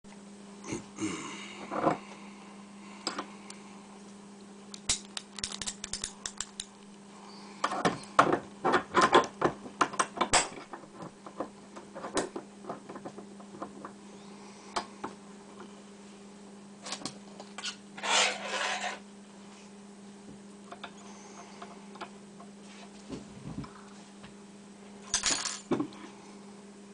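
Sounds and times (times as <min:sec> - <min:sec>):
steady low hum: 0:00.1 - 0:26.9
lockpicking tools clicking in lock: 0:04.8 - 0:06.7.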